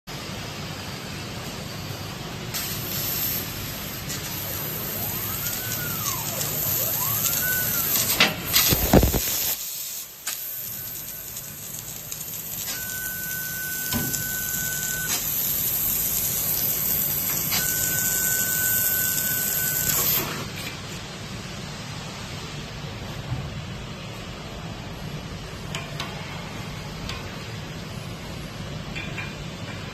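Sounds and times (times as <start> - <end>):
laser cutting machine hissing: 1.8 - 20.5
steady high tone: 4.4 - 8.2
rising and falling tone: 4.8 - 8.1.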